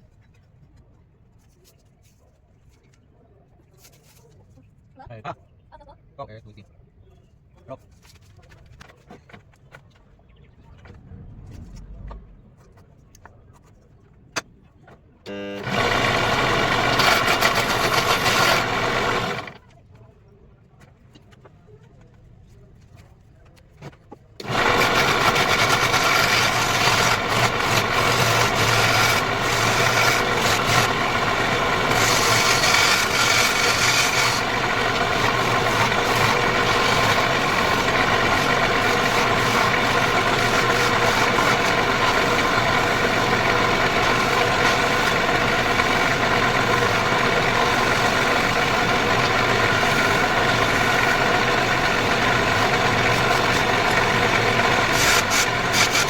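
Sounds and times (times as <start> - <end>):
wood lathe motor hum: 15.3 - 19.6, 24.4 - 56.0
tool scraping spinning wood: 15.6 - 19.6, 24.4 - 56.0.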